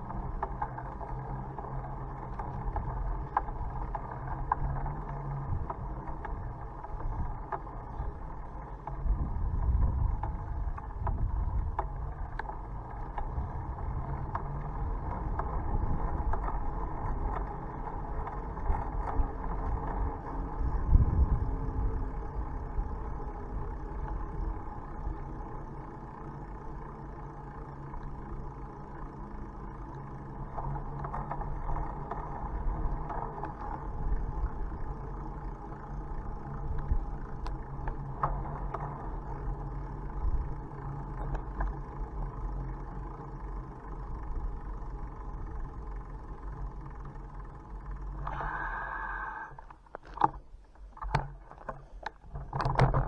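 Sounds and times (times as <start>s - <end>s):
bicycle rolling on road: 0.0s - 53.0s
low hum: 0.0s - 53.0s
faint clicks: 36.0s - 43.4s, 45.6s - 53.0s.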